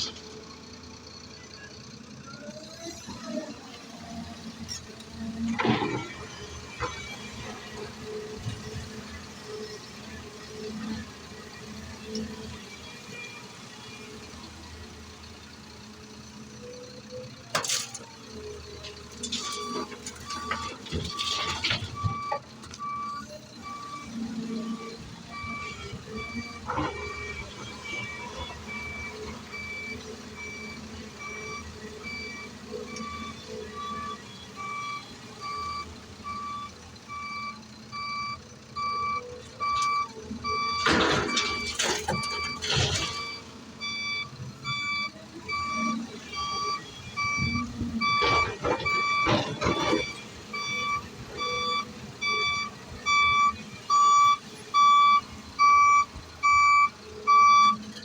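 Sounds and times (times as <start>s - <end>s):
diesel engine rumble: 0.0s - 58.0s
reversing alarm beeping: 19.4s - 57.9s.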